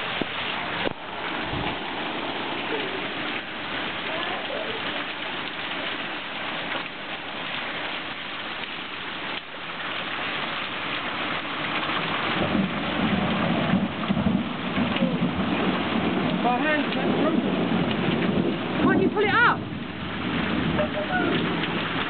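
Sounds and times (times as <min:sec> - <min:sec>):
low rumble: 0:00.0 - 0:04.2
heavy rain pouring: 0:00.0 - 0:22.0.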